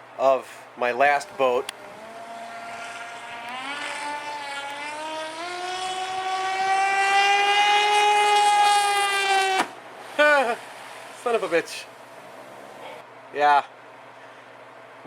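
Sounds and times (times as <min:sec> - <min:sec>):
racing boat motor whining: 0:01.0 - 0:13.0.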